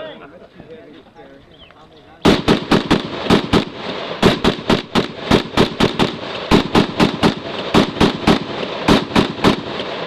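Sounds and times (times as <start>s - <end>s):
rifle shots: 2.2s - 10.0s.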